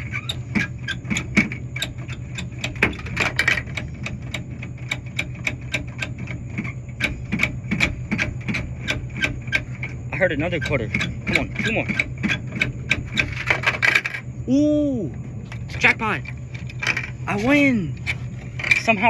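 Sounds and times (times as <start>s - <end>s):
vending machine low hum: 0.0s - 19.0s
coin return clicking: 2.7s - 4.4s, 10.6s - 14.3s, 15.6s - 17.5s.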